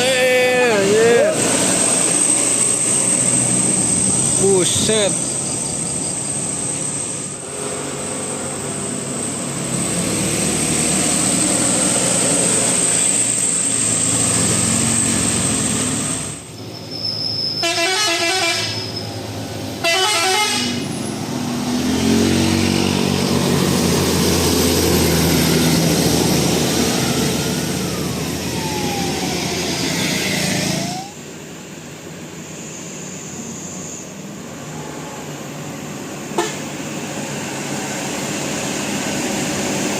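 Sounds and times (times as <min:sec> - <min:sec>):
bus engines running: 0:00.0 - 0:39.9
traffic noise: 0:00.0 - 0:39.9
warbling horn trills: 0:17.6 - 0:18.8, 0:19.8 - 0:20.8
multi-tone bus horns playing melodies: 0:17.6 - 0:19.0, 0:19.8 - 0:20.9, 0:36.3 - 0:36.8.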